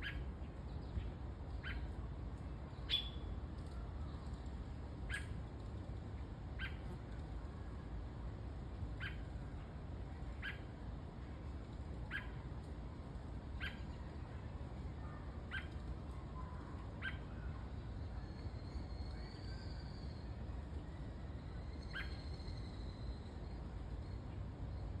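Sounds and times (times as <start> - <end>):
small bird chirping: 0.0 - 1.9, 2.8 - 4.2, 6.6 - 7.0, 9.0 - 9.3, 10.4 - 10.7, 13.6 - 14.1, 15.5 - 15.8, 16.4 - 25.0.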